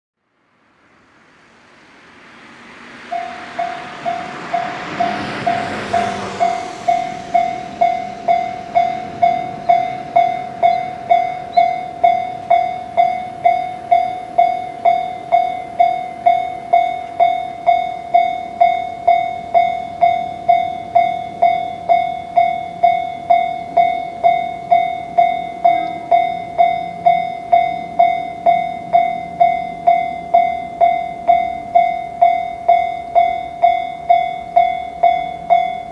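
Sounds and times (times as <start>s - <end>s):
hissing noise: 0.5s - 13.0s
level crossing bell ringing: 3.2s - 35.9s.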